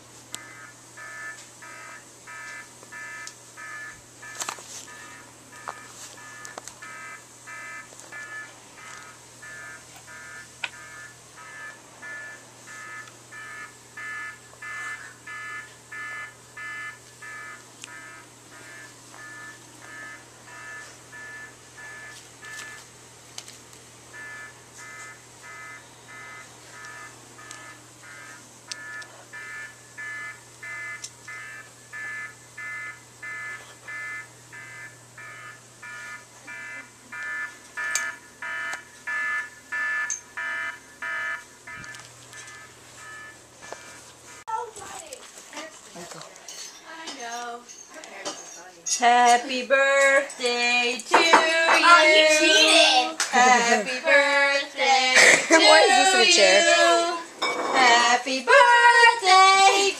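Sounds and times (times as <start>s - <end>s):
alarm clock beeping: 0.4s - 22.9s, 24.1s - 44.4s.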